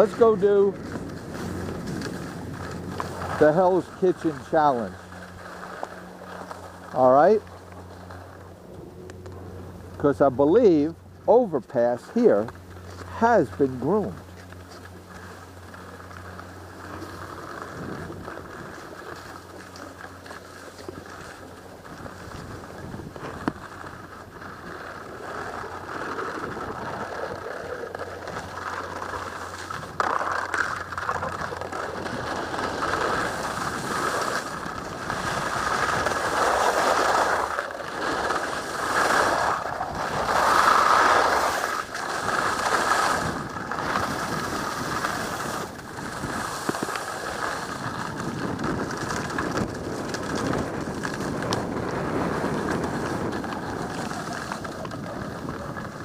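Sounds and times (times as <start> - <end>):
wind on microphone: 0.0 - 5.3, 16.6 - 19.3, 20.8 - 56.0
skis scraping on snow: 0.0 - 56.0.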